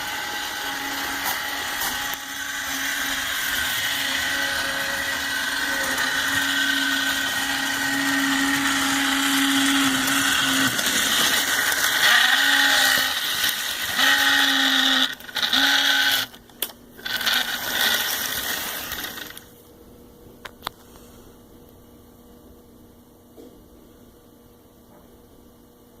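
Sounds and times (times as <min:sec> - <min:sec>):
small electric motor whirring: 0:00.0 - 0:16.4, 0:17.0 - 0:19.4.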